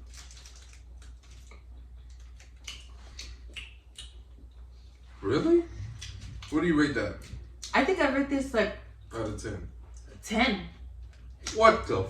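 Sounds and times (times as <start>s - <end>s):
crunchy snack being chewed: 0.0s - 4.5s.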